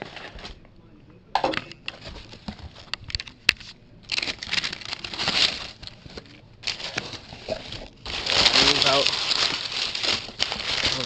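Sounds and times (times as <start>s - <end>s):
plastic packaging crinkling: 4.0s - 11.0s.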